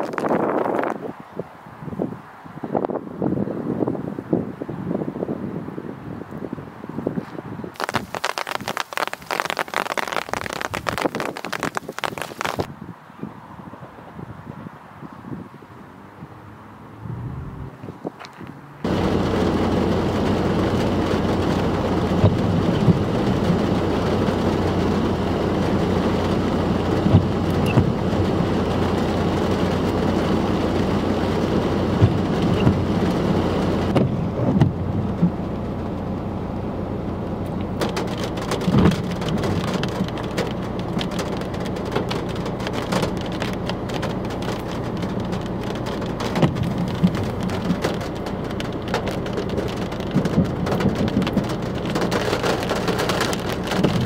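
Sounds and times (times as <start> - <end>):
heavy rain falling: 7.8 - 12.7, 18.8 - 54.0.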